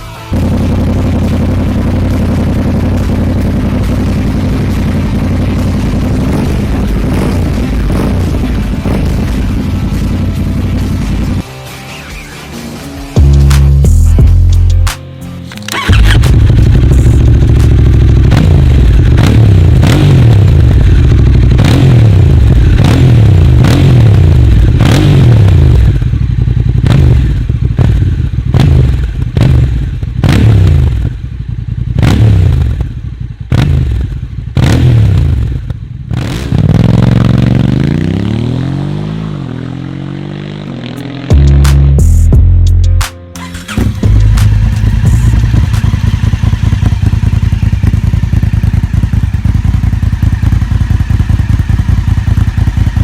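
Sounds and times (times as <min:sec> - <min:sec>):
motorcycle engine revving: 0:00.0 - 0:11.6, 0:12.4 - 0:42.6, 0:43.3 - 0:53.0
exhaust cracks: 0:13.2 - 0:26.0, 0:40.9 - 0:53.0.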